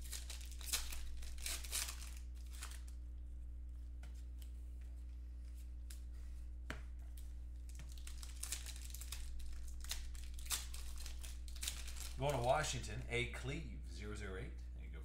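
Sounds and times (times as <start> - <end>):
plastic packaging crinkling: 0.0 - 3.0, 7.6 - 12.7
low electrical hum: 0.0 - 15.0.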